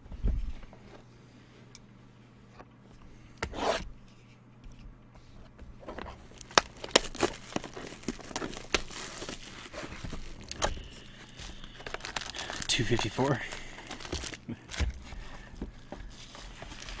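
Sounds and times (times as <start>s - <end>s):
plastic wrapping crinkling and tearing: 6.2s - 17.0s.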